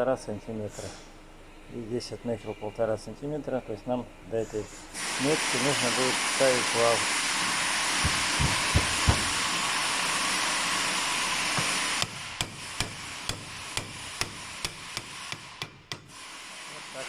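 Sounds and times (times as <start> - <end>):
steady hiss: 4.5 - 17.0
dull knocks: 8.0 - 9.4
hammer tapping metal shaft: 11.6 - 16.2.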